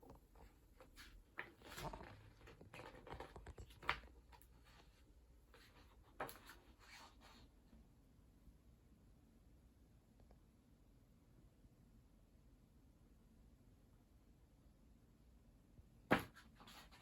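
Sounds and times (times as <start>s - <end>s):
book pages rustling: 0.3s - 7.5s.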